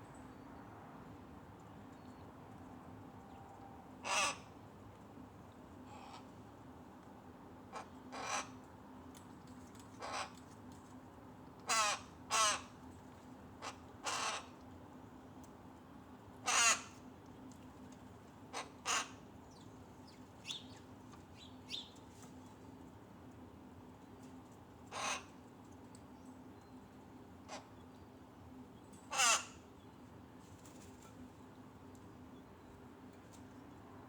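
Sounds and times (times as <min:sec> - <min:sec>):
faint steady hum: 0:00.0 - 0:34.0
rook cawing: 0:04.0 - 0:04.5, 0:11.7 - 0:12.7, 0:16.5 - 0:17.0, 0:18.8 - 0:19.2, 0:24.9 - 0:25.3, 0:29.1 - 0:29.6.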